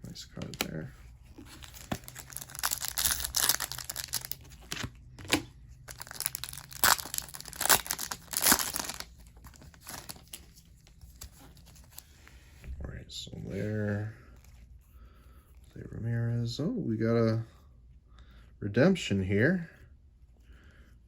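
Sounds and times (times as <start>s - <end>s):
foil wrapper tearing and crinkling: 1.6s - 10.4s.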